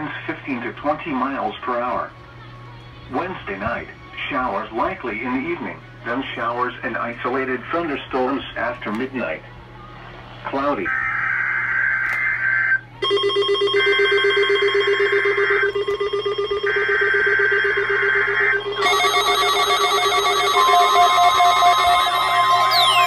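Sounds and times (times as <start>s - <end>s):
mix of electronic tones: 9.9s - 23.0s
steady low electronic tone: 12.5s - 23.0s
warbling digital data bursts: 16.6s - 23.0s
falling pitch sweeps: 17.0s - 23.0s.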